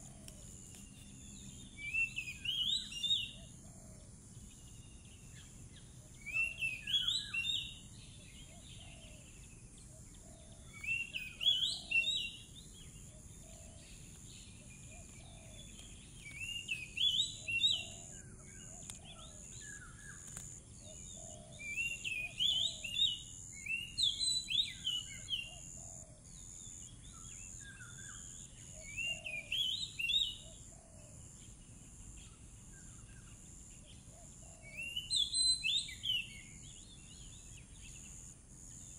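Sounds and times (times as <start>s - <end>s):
bird singing chirping whistles: 0.7s - 3.5s, 6.2s - 7.8s, 10.7s - 12.5s, 16.2s - 18.3s, 21.6s - 25.6s, 27.1s - 30.6s, 34.6s - 37.3s.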